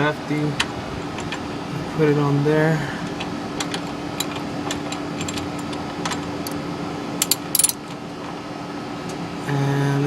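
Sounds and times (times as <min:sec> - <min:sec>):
socket wrench clicking: 0:07.2 - 0:07.8.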